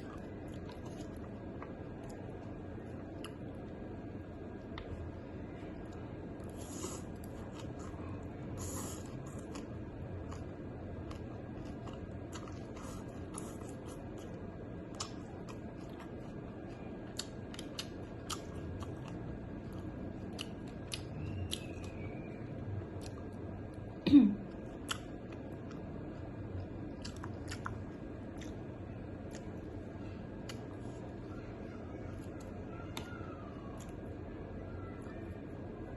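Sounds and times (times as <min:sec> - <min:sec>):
person chewing crunchy food: 0:00.0 - 0:03.6, 0:06.4 - 0:22.1, 0:24.6 - 0:31.1
low background hum: 0:00.0 - 0:35.9.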